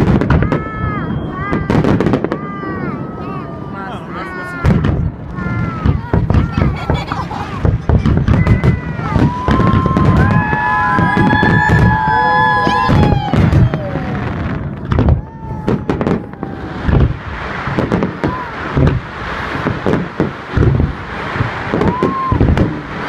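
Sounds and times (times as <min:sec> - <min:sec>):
fireworks bangs: 0:00.0 - 0:23.0
fireworks whistling: 0:00.0 - 0:23.0
fireworks crackling hiss: 0:04.0 - 0:23.0.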